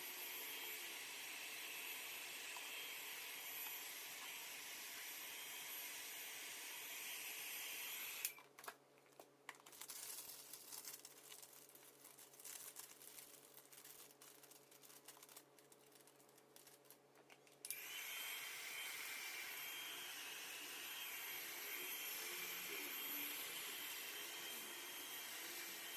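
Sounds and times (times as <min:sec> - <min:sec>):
hair dryer blowing: 0:00.0 - 0:08.4, 0:17.7 - 0:25.9
plastic seal crinkling: 0:08.6 - 0:17.5.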